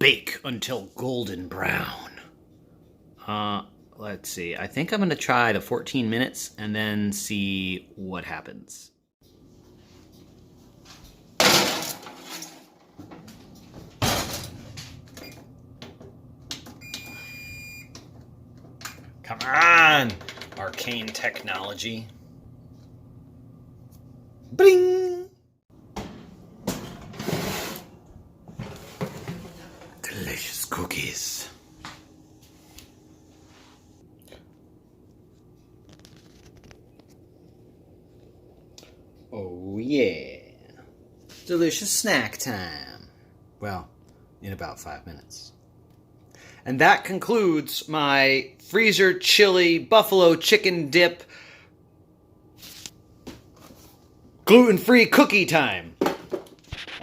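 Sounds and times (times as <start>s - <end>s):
oven control panel beep: 16.8s - 18.0s
steady low hum: 20.7s - 27.2s.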